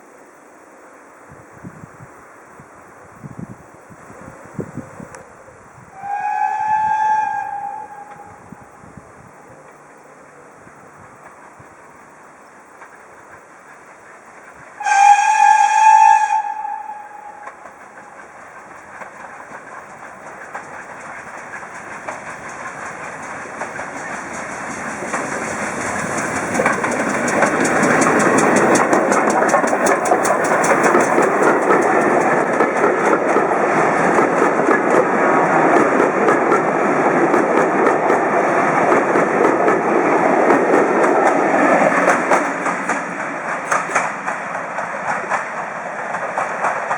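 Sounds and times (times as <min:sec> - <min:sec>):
steam locomotive whistle: 0:05.9 - 0:08.7, 0:14.8 - 0:17.7
train wheels clicking over rail joints: 0:12.4 - 0:15.0, 0:16.6 - 0:46.9.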